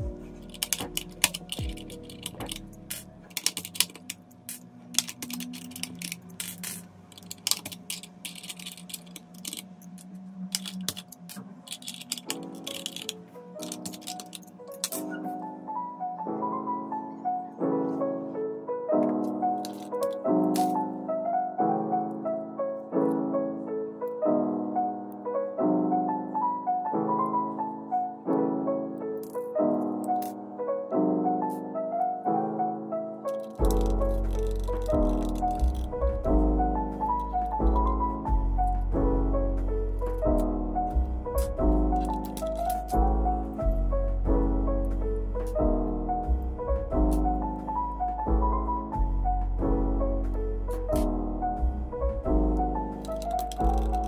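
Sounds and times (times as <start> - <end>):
mechanical keyboard keys clacking: 0.0 - 15.2, 19.0 - 20.9, 29.2 - 30.4, 33.2 - 38.9, 40.0 - 43.7, 52.5 - 54.0
lo-fi piano music: 0.0 - 54.0.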